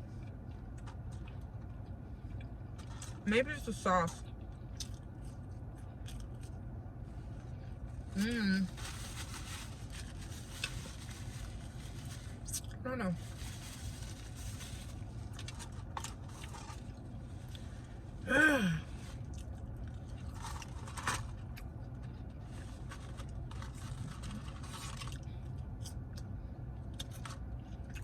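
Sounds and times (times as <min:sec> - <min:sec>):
person chewing and crunching food: 0:04.2 - 0:06.6, 0:19.2 - 0:20.8, 0:21.4 - 0:28.0.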